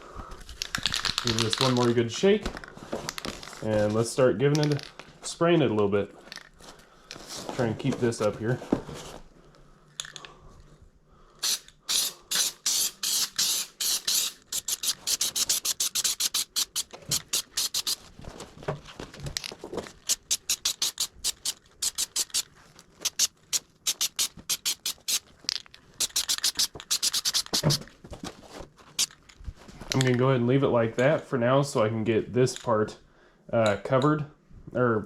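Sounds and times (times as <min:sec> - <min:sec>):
aerosol can spraying: 0:11.4 - 0:18.0, 0:20.0 - 0:25.2, 0:26.0 - 0:27.9.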